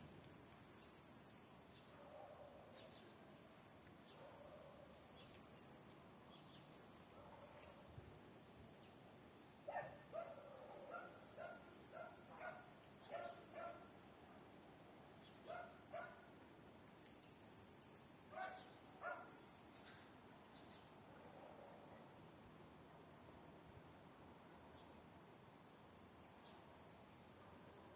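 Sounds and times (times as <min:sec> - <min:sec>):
faint dog barking: 0:01.9 - 0:03.0, 0:04.1 - 0:05.1, 0:07.1 - 0:07.9, 0:09.6 - 0:13.9, 0:15.4 - 0:16.3, 0:18.3 - 0:19.4, 0:21.1 - 0:22.1.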